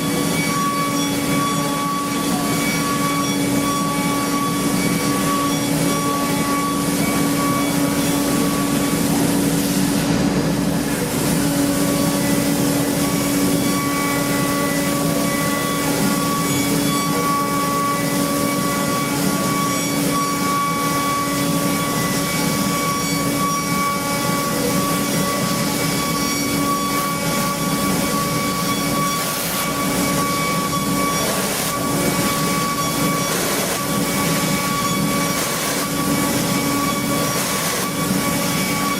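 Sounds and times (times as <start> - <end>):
machine hum and whine: 0.0 - 38.9
high held tones: 10.8 - 38.9.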